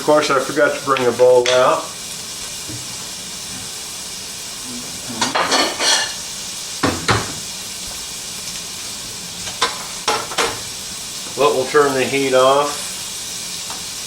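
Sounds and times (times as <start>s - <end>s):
vegetables sizzling in oil: 0.0s - 14.0s
dishes clattering: 5.1s - 6.2s, 6.8s - 7.5s, 9.5s - 10.7s.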